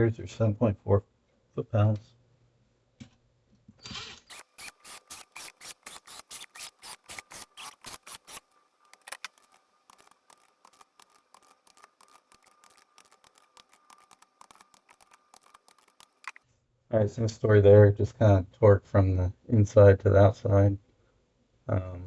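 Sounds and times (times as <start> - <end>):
torque wrench ratchet clicking: 4.3 - 16.4.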